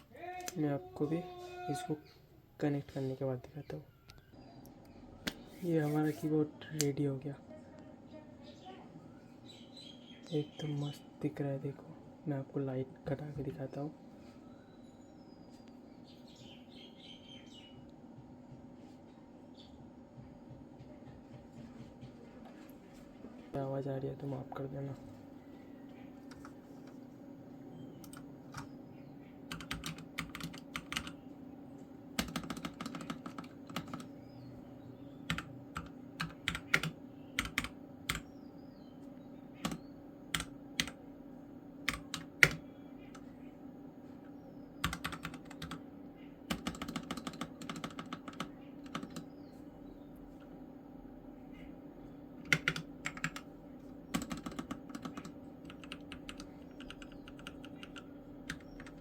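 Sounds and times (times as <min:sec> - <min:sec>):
steady low hum: 0:00.0 - 0:59.0
mechanical keyboard keys clacking: 0:29.5 - 0:31.1, 0:32.2 - 0:34.1, 0:35.3 - 0:38.3, 0:44.8 - 0:45.8, 0:46.5 - 0:49.3, 0:54.1 - 0:59.0.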